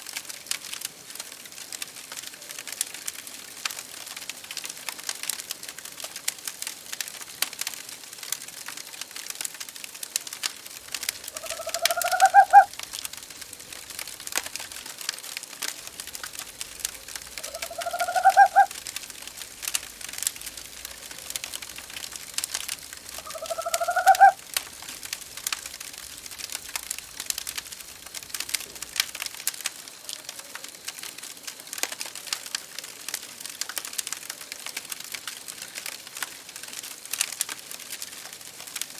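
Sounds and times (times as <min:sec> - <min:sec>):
fireplace wood crackling: 0:00.0 - 0:38.9
owl calling: 0:10.9 - 0:14.7, 0:15.8 - 0:24.4.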